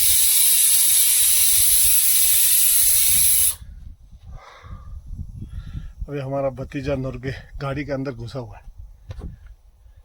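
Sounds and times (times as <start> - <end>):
pressure cooker steam hiss: 0.0 - 3.6.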